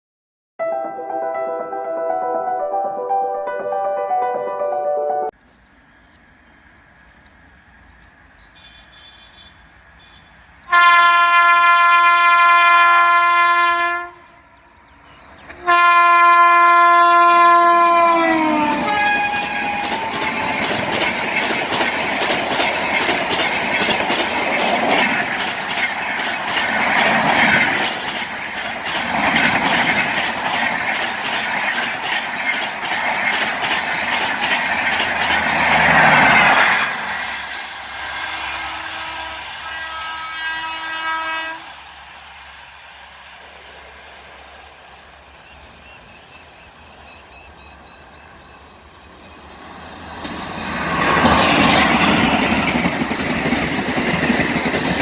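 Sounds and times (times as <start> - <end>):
train air horn blasts: 10.7 - 14.6, 15.6 - 20.5, 38.0 - 41.7
train coaches clattering over rails: 17.7 - 37.7, 49.3 - 55.0.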